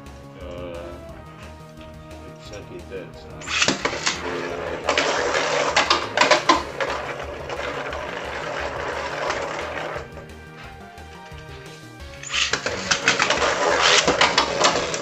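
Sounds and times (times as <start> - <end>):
spinning tops clashing: 3.4 - 11.4, 12.2 - 15.0
spinning tops scraping plastic: 3.4 - 11.5, 12.1 - 15.0.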